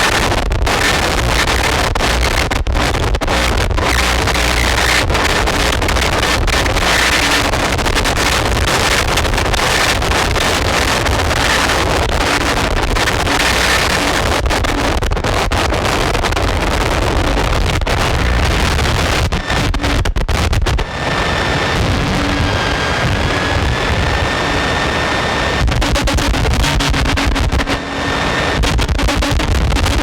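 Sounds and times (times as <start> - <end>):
harsh distorted noise music: 25.7 - 30.0.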